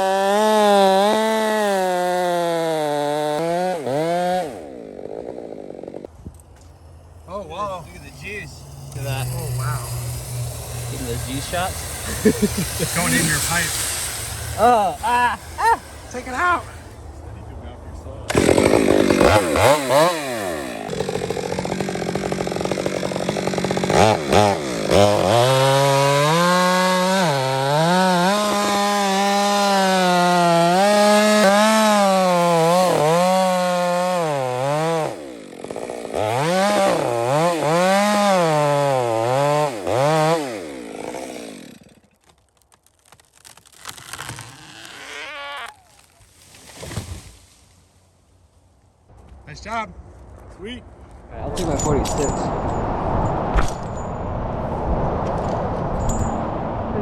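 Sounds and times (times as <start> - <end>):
chainsaw cutting wood: 0.0 - 6.2, 8.6 - 17.0, 18.3 - 47.8.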